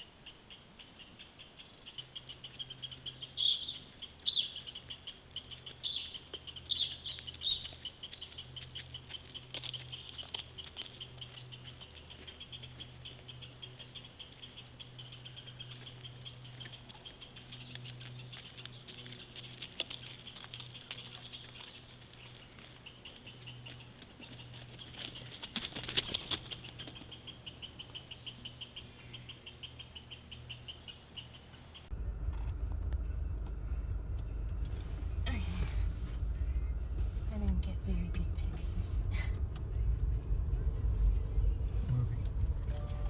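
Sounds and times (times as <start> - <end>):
low steady hum: 0.0 - 43.0
deer rustling and pattering: 14.2 - 27.7, 32.0 - 39.7
low rumble: 31.9 - 43.0.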